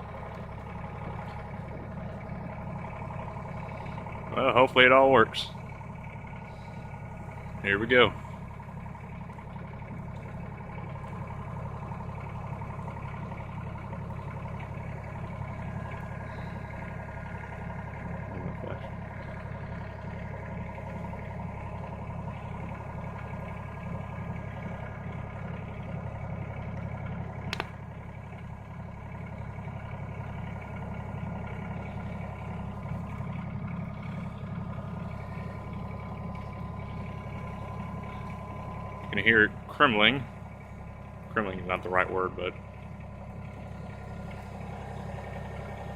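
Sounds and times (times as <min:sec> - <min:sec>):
tractor engine under load: 0:00.0 - 0:45.9
sharp crack: 0:27.5 - 0:27.8.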